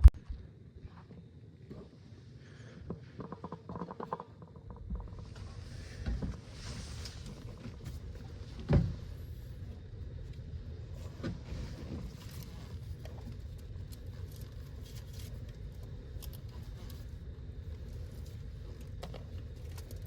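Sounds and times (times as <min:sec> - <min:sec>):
steady low rumble: 0:04.4 - 0:20.0.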